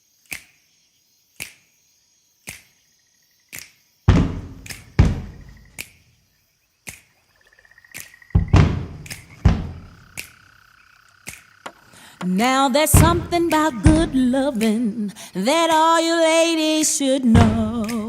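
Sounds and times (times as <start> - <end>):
deep bass hits: 4.1 - 5.6, 8.4 - 10.0
sharp clicks: 8.0 - 10.4, 11.1 - 14.8.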